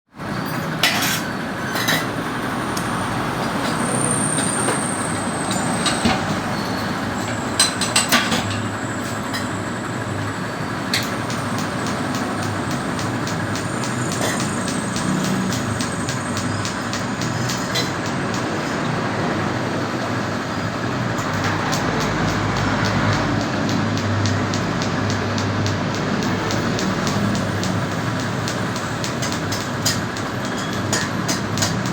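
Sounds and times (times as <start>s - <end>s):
sharp clicks: 10.9s - 18.7s, 21.1s - 31.9s.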